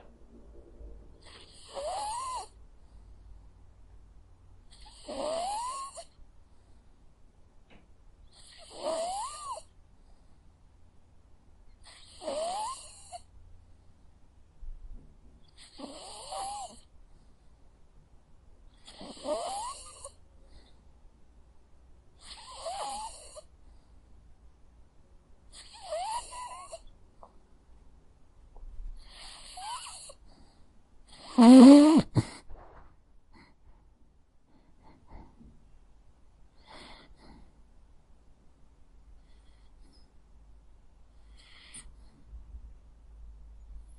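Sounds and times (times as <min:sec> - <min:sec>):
dog snoring with whistling squeak: 0:01.2 - 0:02.6, 0:04.7 - 0:06.1, 0:08.3 - 0:09.7, 0:11.8 - 0:13.2, 0:15.6 - 0:16.8, 0:18.8 - 0:20.2, 0:22.2 - 0:23.4, 0:25.5 - 0:26.8, 0:29.0 - 0:30.2, 0:31.1 - 0:32.1.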